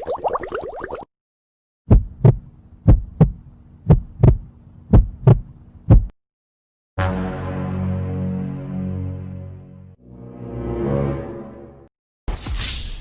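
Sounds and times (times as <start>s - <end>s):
heartbeat thumps: 1.9s - 6.1s
sustained musical chord: 7.0s - 11.9s.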